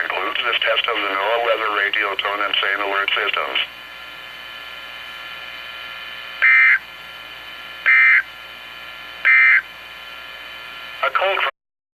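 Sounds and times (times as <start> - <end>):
radio hiss: 0.0 - 11.6
digital two-tone data bursts: 7.9 - 8.3.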